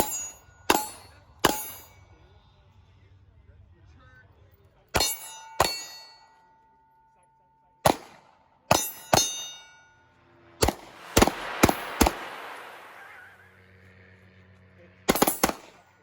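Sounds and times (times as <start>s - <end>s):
steel targets ringing: 0.0s - 2.1s, 4.9s - 13.3s, 15.1s - 15.8s
pistol shots: 7.8s - 9.4s, 10.6s - 13.1s, 15.1s - 16.0s.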